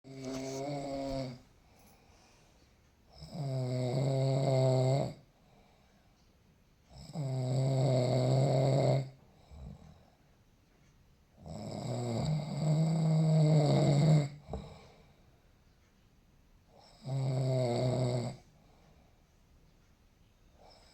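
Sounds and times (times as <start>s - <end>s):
man snoring: 0.1s - 1.4s, 3.2s - 5.2s, 6.9s - 9.8s, 11.4s - 14.8s, 16.8s - 18.5s.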